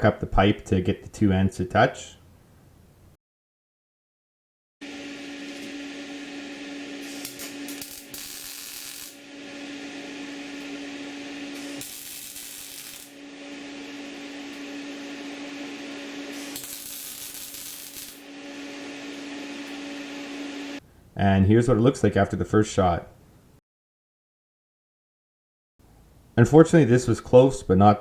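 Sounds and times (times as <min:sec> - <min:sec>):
workshop machine humming: 0:04.8 - 0:20.8.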